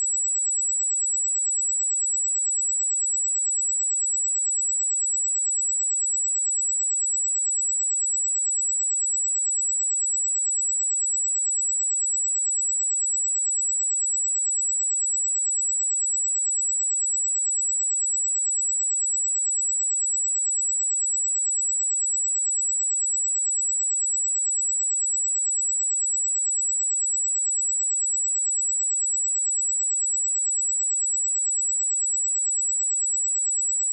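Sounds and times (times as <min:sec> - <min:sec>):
high-pitched sine-wave test tone: 0:07.2 - 0:33.9.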